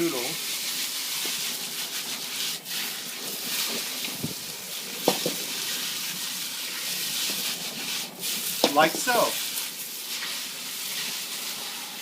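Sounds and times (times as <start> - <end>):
noodles sizzling in a wok: 0.0 - 12.0
utensil knocking against wok: 5.0 - 5.4.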